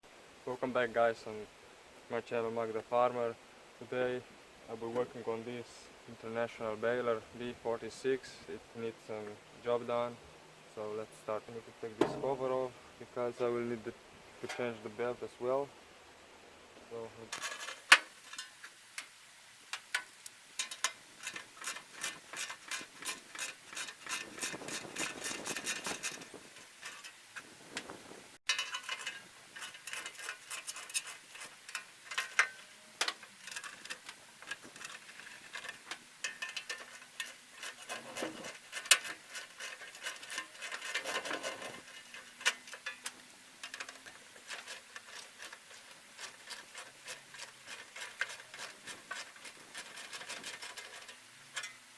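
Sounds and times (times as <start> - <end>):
metal knocks: 12.0 - 12.7.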